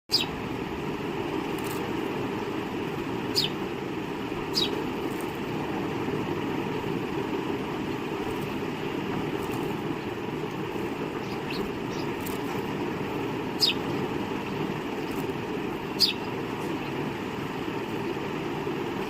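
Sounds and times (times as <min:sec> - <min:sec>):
sparrow chirps: 0:00.1 - 0:00.4, 0:03.3 - 0:03.6, 0:04.4 - 0:05.4, 0:09.3 - 0:12.7, 0:13.4 - 0:17.1
low background rumble: 0:00.1 - 0:19.0.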